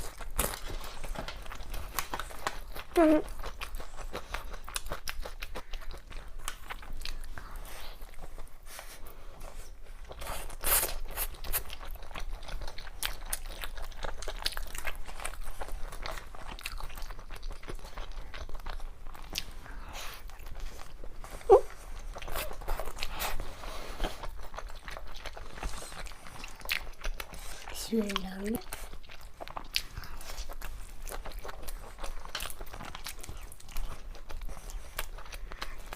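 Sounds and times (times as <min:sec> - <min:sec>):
crunchy biting and chewing: 0:00.0 - 0:35.9.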